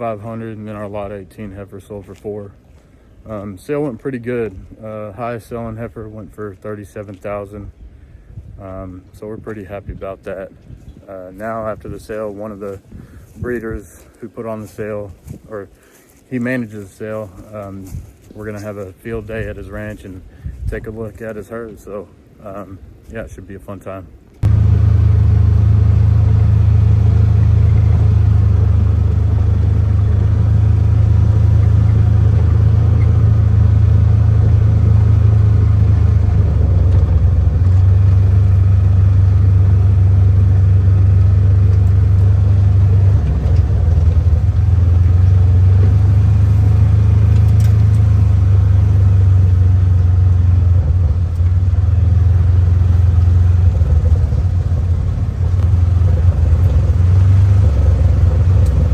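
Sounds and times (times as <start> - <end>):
motor vehicle rumbling: 24.4 - 58.9.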